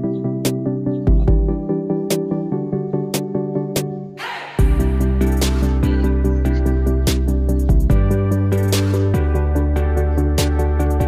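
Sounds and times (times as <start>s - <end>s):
electronic music with beat: 0.0s - 11.0s.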